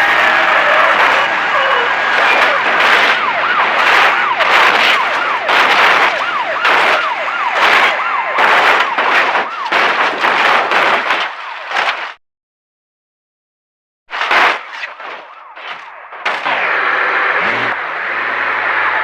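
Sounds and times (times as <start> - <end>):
police siren yelping: 0.0 - 11.8, 14.6 - 17.8.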